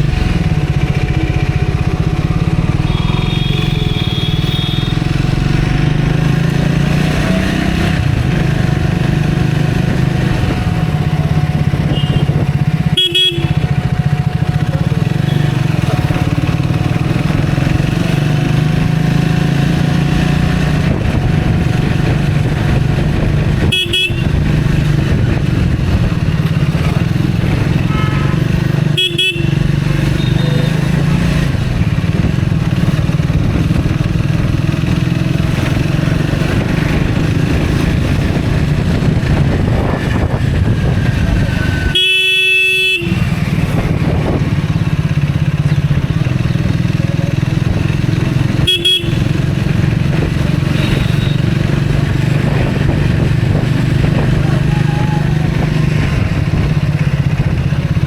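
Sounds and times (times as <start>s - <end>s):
motorcycle engine running: 0.0s - 58.0s
vehicle horn toots: 2.8s - 5.1s, 11.8s - 13.8s, 23.6s - 24.6s, 27.8s - 30.9s, 41.7s - 43.5s, 48.5s - 49.6s, 50.7s - 51.6s.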